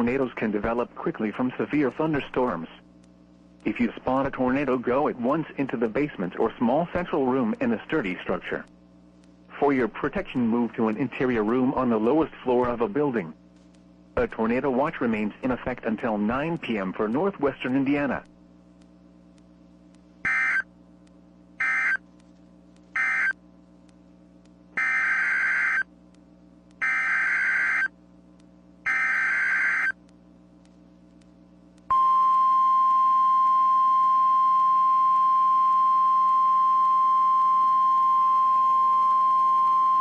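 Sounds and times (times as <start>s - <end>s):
steady alarm tone: 20.2s - 20.7s, 21.6s - 22.0s, 23.0s - 23.4s, 24.8s - 25.9s, 26.8s - 27.9s, 28.8s - 30.0s.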